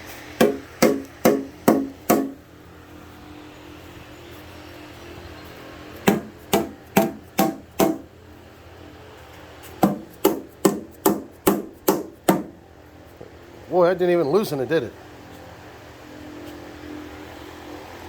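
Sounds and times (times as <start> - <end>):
mallet striking metal part: 0.4 - 2.4, 6.1 - 8.0.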